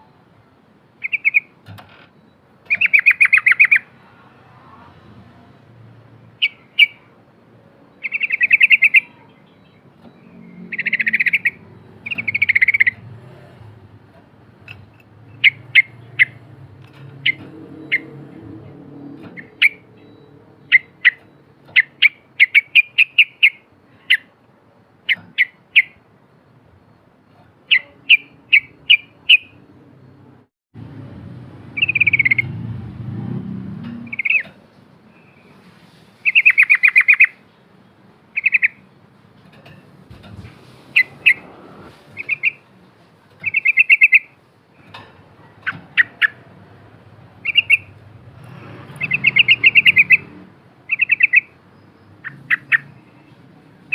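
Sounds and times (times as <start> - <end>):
bird quick sharp chirps: 40.8 - 41.5, 42.1 - 42.6.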